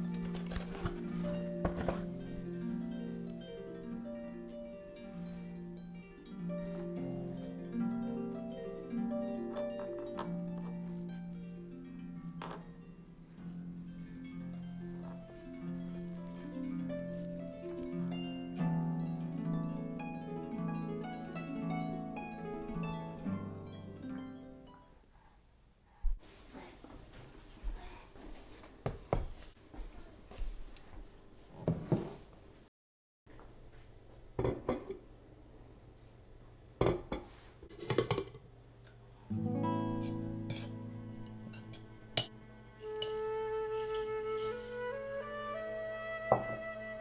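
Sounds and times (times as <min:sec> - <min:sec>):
harp-like plucked string music: 0:00.0 - 0:24.9, 0:39.3 - 0:47.0
acoustic guitar chord ringing: 0:39.3 - 0:42.4.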